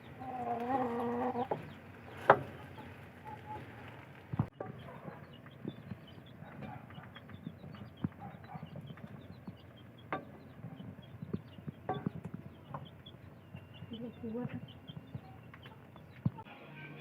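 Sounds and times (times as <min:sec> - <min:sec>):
chickens clucking: 0:00.0 - 0:16.5
high chirps of chicks: 0:00.0 - 0:16.5
sharp knocks: 0:10.1 - 0:12.9.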